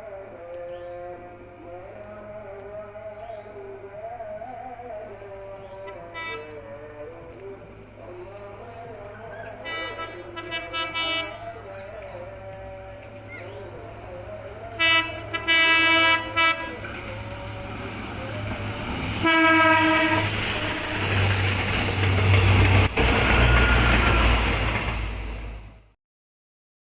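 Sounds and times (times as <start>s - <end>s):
locomotive engine and wheels rumbling: 0.3s - 25.9s
locomotive horn blasts: 5.8s - 6.7s, 9.6s - 11.7s, 14.7s - 17.6s, 19.2s - 20.8s.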